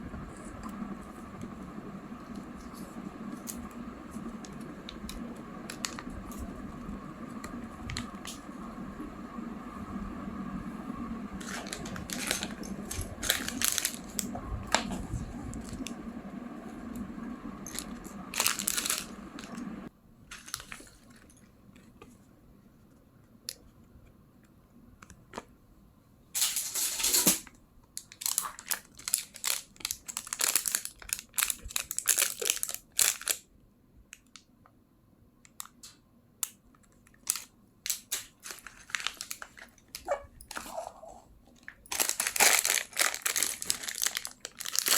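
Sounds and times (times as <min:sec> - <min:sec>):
steady background hum: 0:00.0 - 0:44.9
plastic packaging crinkling and tearing: 0:02.6 - 0:06.5, 0:11.3 - 0:15.0, 0:17.6 - 0:19.7, 0:20.3 - 0:21.3, 0:27.1 - 0:33.5, 0:36.4 - 0:40.9, 0:41.6 - 0:44.9.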